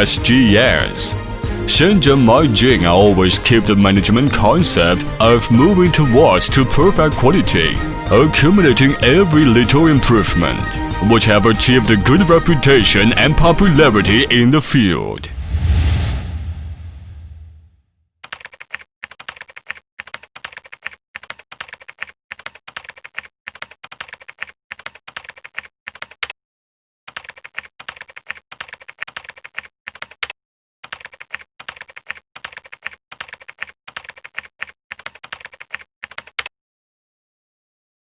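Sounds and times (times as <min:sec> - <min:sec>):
rapid keyboard typing: 0:18.2 - 0:26.3, 0:27.1 - 0:36.5.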